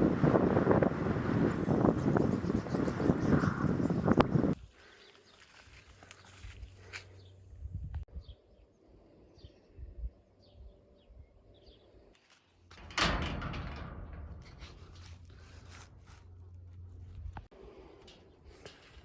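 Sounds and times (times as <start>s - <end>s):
gate banging: 12.7s - 17.5s
gate clattering: 12.7s - 17.5s.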